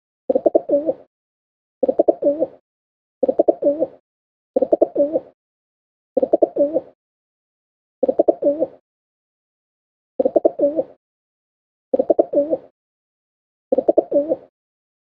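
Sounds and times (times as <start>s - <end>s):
dove cooing: 0.3s - 1.1s, 1.8s - 2.6s, 3.2s - 4.0s, 4.6s - 5.4s, 6.2s - 7.0s, 8.0s - 8.8s, 10.2s - 11.0s, 12.0s - 12.7s, 13.7s - 14.5s.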